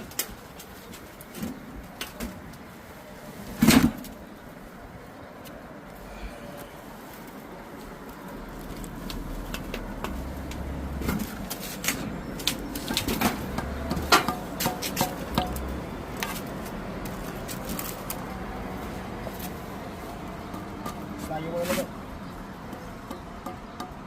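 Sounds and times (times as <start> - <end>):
sharp knocks and clicks: 9.5 - 16.4.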